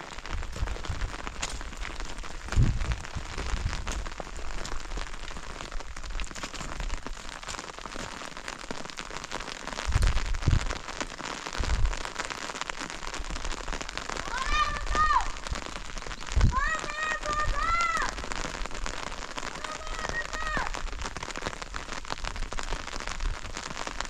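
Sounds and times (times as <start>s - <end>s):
rain pattering: 0.0s - 24.0s
low rumbles: 0.3s - 6.3s, 9.8s - 10.9s.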